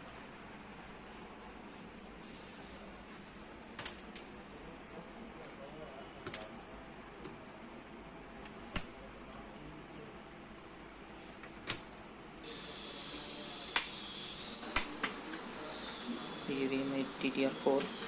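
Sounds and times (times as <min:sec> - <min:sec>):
sharp clicks of computer parts: 0:03.8 - 0:04.3, 0:06.2 - 0:06.5, 0:08.7 - 0:09.4, 0:11.6 - 0:12.0, 0:13.7 - 0:15.2.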